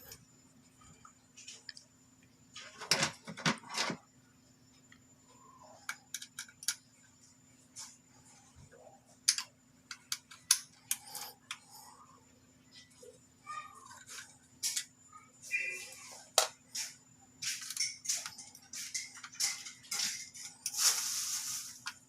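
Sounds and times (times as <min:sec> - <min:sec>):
plastic parts clicking and rattling: 0:05.9 - 0:06.8, 0:09.2 - 0:11.6.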